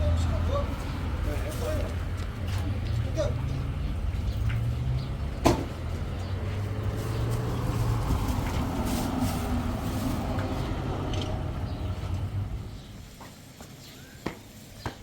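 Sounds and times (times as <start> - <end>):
engine running: 3.4 - 12.9.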